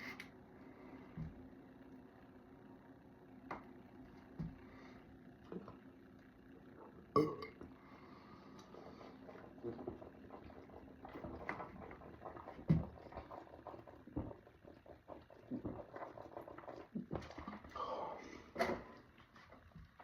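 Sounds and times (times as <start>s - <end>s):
person burping: 7.2s - 7.6s.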